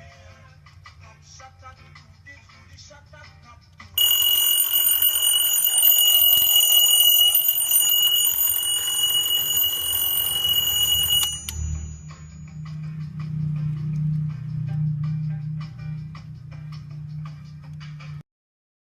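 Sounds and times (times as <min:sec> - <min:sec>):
alarm clock bell ringing: 0:04.0 - 0:12.8.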